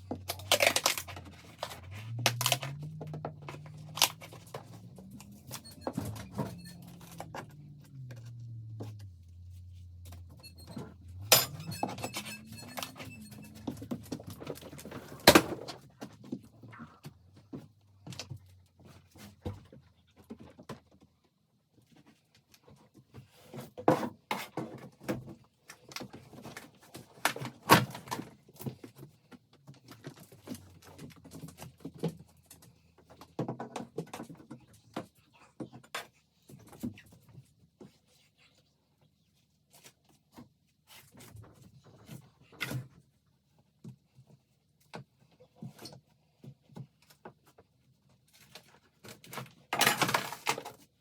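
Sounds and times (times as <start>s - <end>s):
faint low hum: 0.0s - 15.7s.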